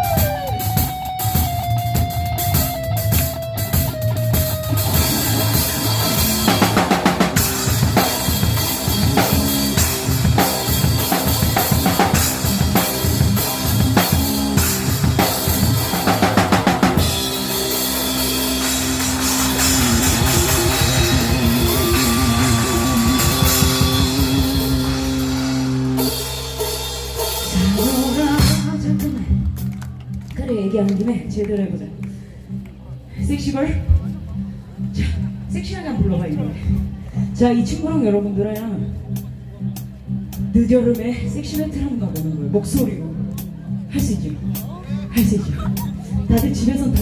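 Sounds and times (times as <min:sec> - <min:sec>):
electric guitar held notes: 0:00.0 - 0:26.6
drum kit: 0:00.0 - 0:29.8
bass: 0:00.0 - 0:47.0.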